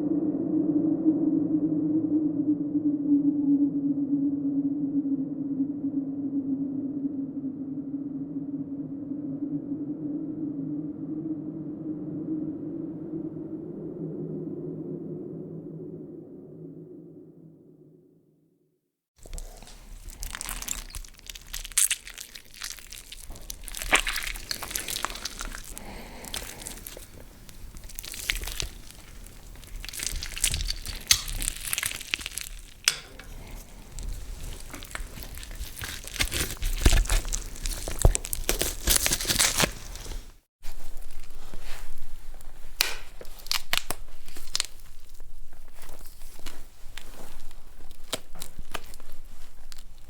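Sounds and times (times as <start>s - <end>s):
bone breaking cracks: 19.2s - 40.3s, 42.8s - 45.2s, 47.8s - 49.8s
hand squelching through wet guts: 19.2s - 40.3s, 42.8s - 50.0s.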